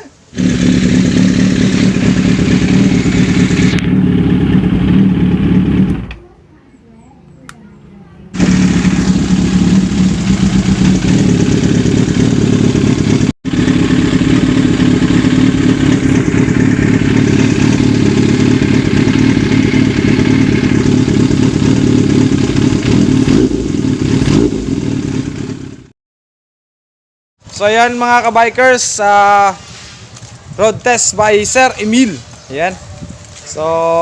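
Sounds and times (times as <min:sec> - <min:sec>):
motorcycle engine running: 0:00.3 - 0:06.4, 0:08.3 - 0:25.9.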